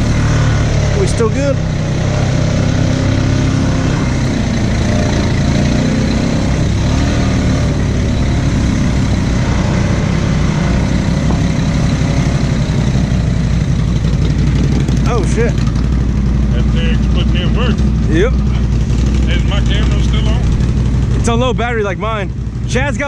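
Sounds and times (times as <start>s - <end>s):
atv engine idling: 11.0s - 23.0s.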